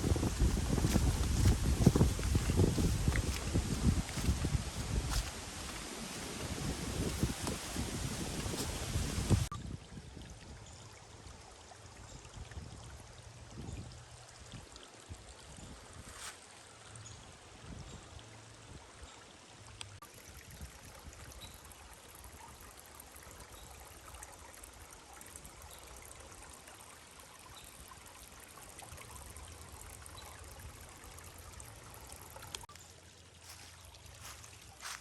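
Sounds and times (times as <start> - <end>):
river water rushing: 0.0 - 9.5.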